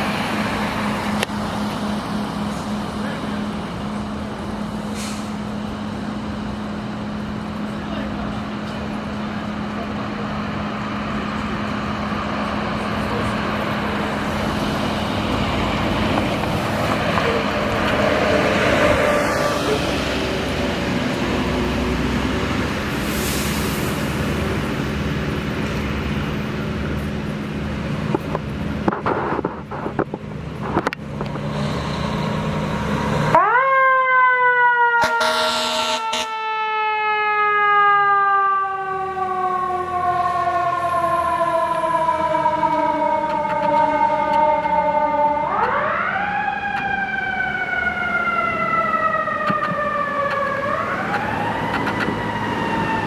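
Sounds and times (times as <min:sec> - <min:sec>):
fire engine drone: 0:00.0 - 0:53.0
traffic noise: 0:00.0 - 0:53.0
siren winding up and down: 0:31.7 - 0:53.0
loud horn blasts: 0:35.0 - 0:36.6.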